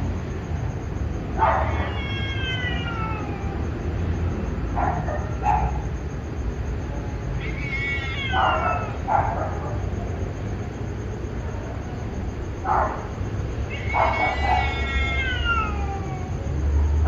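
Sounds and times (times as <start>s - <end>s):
cats yowling: 1.2s - 5.9s, 7.2s - 9.9s, 12.6s - 17.0s.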